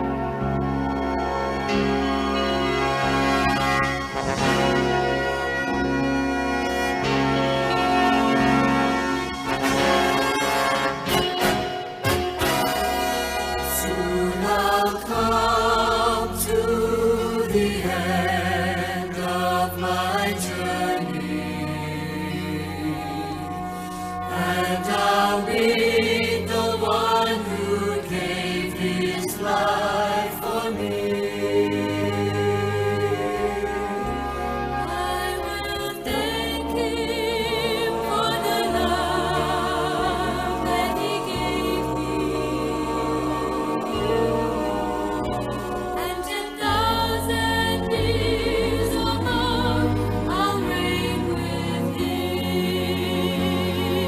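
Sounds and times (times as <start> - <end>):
gospel song chords over bass: 0.0 - 54.0
vocal group singing in harmony: 12.4 - 54.0.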